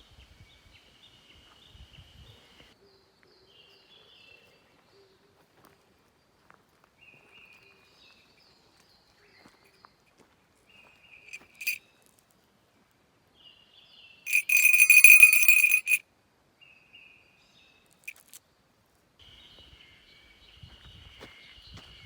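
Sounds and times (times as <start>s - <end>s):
bear bell ringing: 11.4s - 11.8s, 14.3s - 16.0s.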